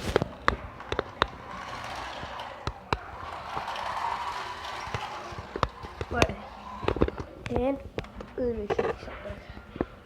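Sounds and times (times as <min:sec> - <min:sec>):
toy car knocking and rattling: 0:00.5 - 0:07.2.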